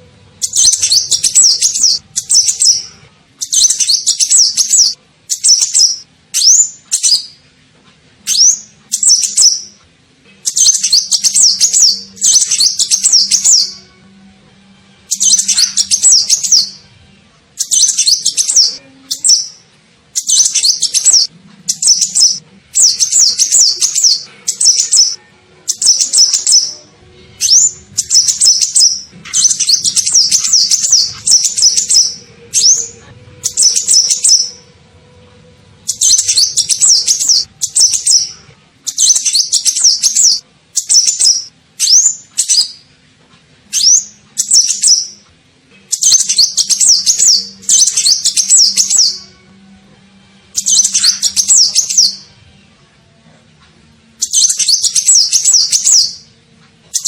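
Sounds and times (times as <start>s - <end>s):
bird twittering chirps: 0.4s - 7.4s, 8.3s - 9.8s, 10.5s - 13.7s, 15.1s - 16.8s, 17.6s - 19.6s, 20.2s - 26.7s, 27.4s - 34.6s, 35.9s - 38.3s, 38.9s - 42.8s, 46.0s - 49.2s, 50.6s - 52.2s, 54.2s - 56.3s.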